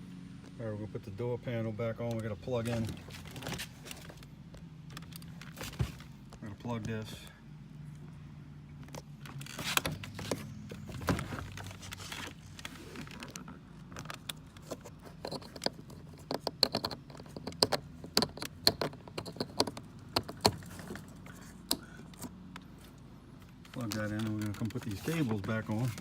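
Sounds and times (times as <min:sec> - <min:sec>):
steady low hum: 0:00.0 - 0:26.0
plastic panel clicks and rattles: 0:13.1 - 0:22.4.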